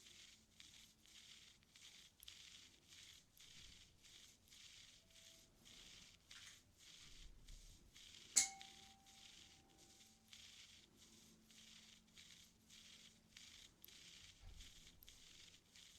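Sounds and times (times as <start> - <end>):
tools scraping in ear canal: 8.2 - 10.2
metal tool clinking: 8.4 - 8.8.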